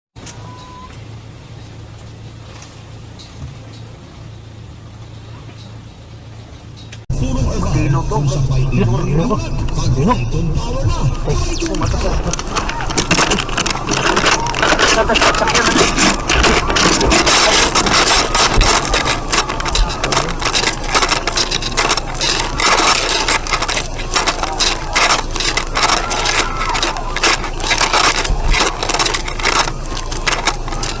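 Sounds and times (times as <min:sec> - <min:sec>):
objects rattling and clattering: 0:11.1 - 0:31.0.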